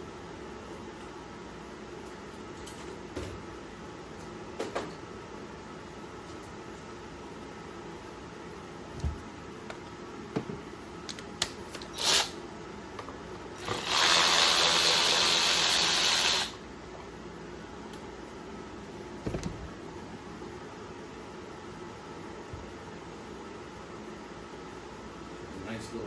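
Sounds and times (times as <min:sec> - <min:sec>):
cordless driver running: 0:11.9 - 0:12.4, 0:13.6 - 0:16.6.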